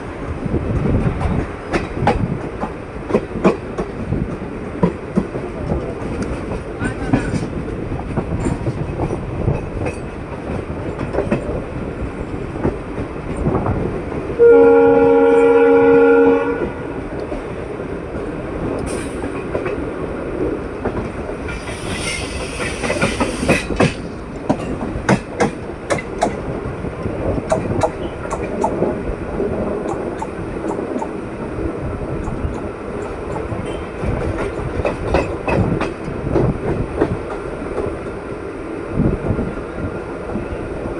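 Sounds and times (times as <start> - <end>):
train wheels clacking on rail joints: 0.6 - 14.3, 17.0 - 38.3
locomotive horn blast: 14.4 - 17.0.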